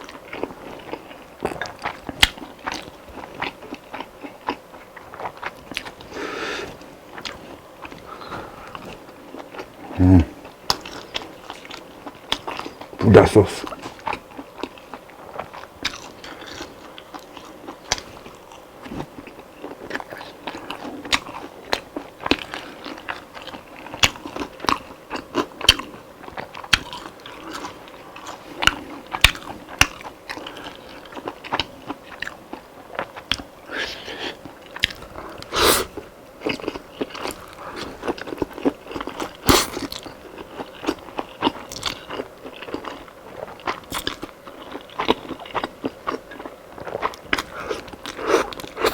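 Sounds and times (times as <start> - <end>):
crunchy chewing of fried chicken: 0.0 - 48.9.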